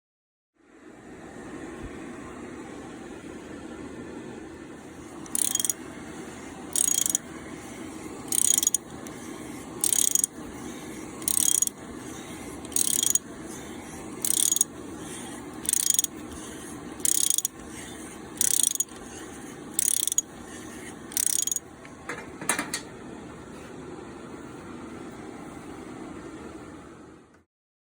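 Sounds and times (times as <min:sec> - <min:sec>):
ratchet wrench clicking: 0:05.2 - 0:05.8, 0:06.7 - 0:07.2, 0:08.3 - 0:09.0, 0:09.8 - 0:10.4, 0:11.2 - 0:11.8, 0:12.6 - 0:13.2, 0:14.2 - 0:14.7, 0:15.6 - 0:16.1, 0:17.0 - 0:17.7, 0:18.4 - 0:19.0, 0:19.8 - 0:20.3, 0:21.1 - 0:21.6.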